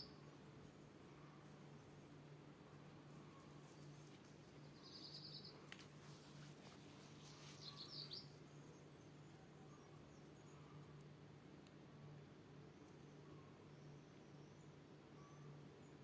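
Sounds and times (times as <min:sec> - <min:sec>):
bird trilling and chirping: 0:07.3 - 0:08.4.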